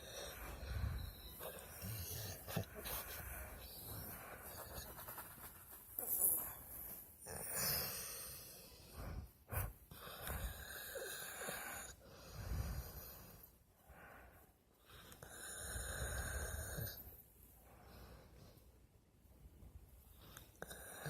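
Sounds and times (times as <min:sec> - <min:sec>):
dog snoring: 0:00.0 - 0:05.0, 0:07.2 - 0:13.4, 0:14.9 - 0:17.1.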